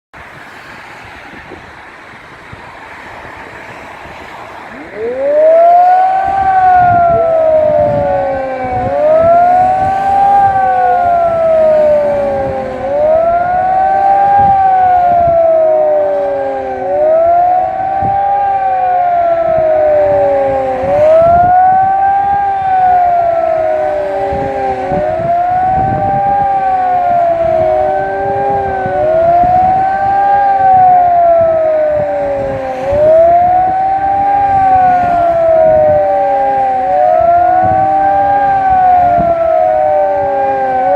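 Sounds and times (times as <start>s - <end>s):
civil defence siren wailing: 0.2s - 40.9s
wind buffeting microphone: 0.2s - 40.9s.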